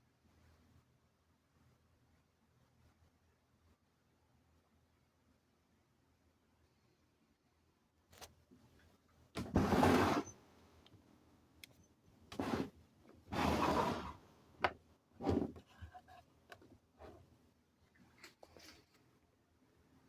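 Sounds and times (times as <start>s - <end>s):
scraping and rubbing noises: 9.4s - 10.3s, 12.3s - 14.2s.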